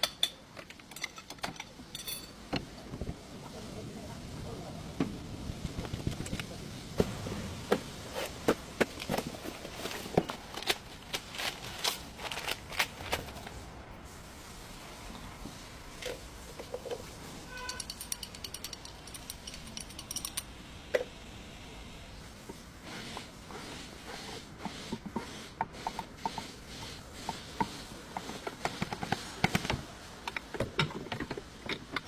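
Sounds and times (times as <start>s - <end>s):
metal tools clanking: 0.0s - 2.8s, 17.5s - 20.5s.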